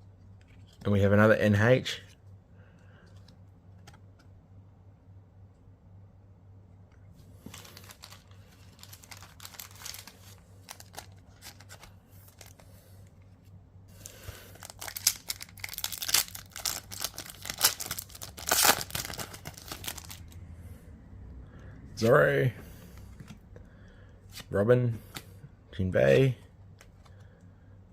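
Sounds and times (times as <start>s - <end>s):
cards shuffling: 0.4s - 1.0s, 3.0s - 4.4s, 7.4s - 12.7s, 14.0s - 20.3s
wrapper crinkling: 7.5s - 12.6s, 14.0s - 20.4s
foil pack tearing: 14.5s - 20.2s.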